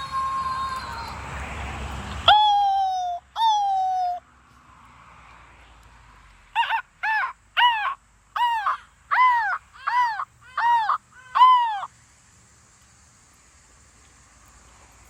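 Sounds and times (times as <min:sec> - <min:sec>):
person imitating crow caws: 0:06.6 - 0:11.9.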